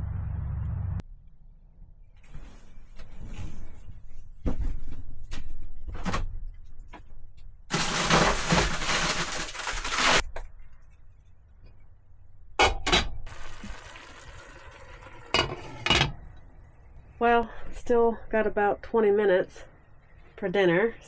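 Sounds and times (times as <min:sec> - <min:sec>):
dishes and utensils clinking: 0:15.2 - 0:16.2.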